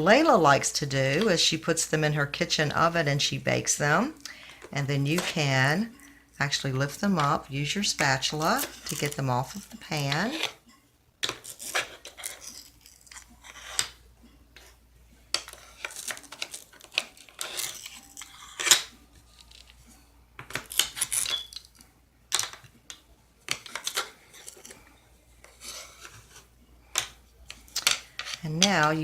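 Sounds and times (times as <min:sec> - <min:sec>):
wooden toys clicking and tapping: 0:26.9 - 0:29.0.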